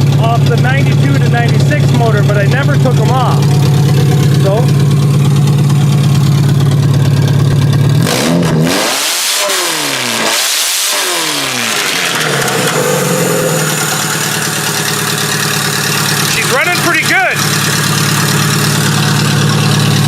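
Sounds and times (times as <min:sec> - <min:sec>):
car engine idling and revving: 0:00.0 - 0:20.0.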